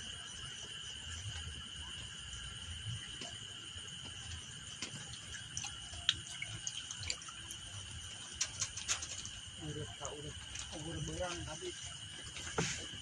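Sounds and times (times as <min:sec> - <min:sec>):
drip-like clicks: 0:02.9 - 0:09.6.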